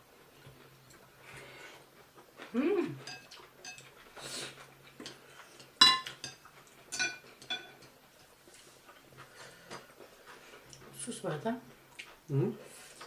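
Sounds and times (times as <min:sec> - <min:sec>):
cutlery clinking against a dish: 0:03.0 - 0:04.2, 0:05.0 - 0:08.4.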